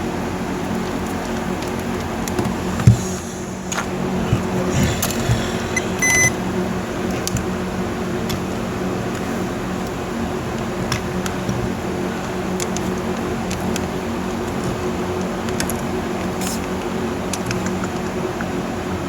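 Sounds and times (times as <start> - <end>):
steady low hum: 0.0 - 17.4
short electronic beep: 5.7 - 6.4.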